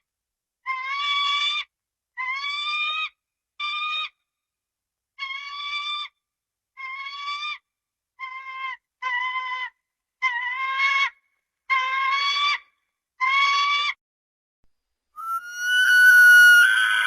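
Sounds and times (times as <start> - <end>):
short bird-like dinosaur calls: 15.2 - 17.0.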